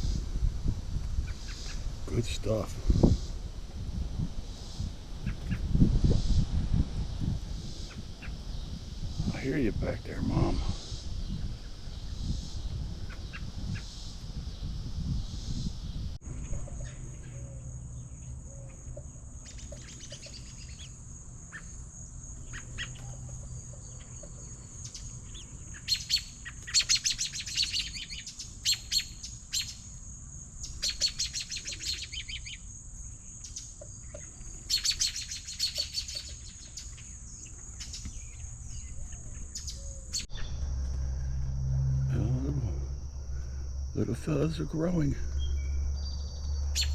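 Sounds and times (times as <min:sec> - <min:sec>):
robin calling: 0:15.2 - 0:30.0, 0:30.6 - 0:41.3, 0:42.1 - 0:46.9.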